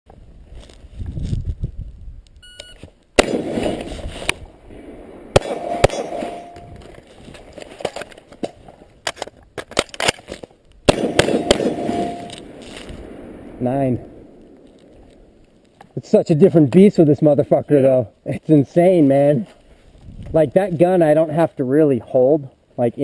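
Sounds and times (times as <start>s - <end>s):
rifle gunshots: 3.2s - 4.1s, 4.7s - 6.7s, 10.9s - 15.4s
shot timer beep: 5.4s - 6.8s, 11.4s - 12.4s.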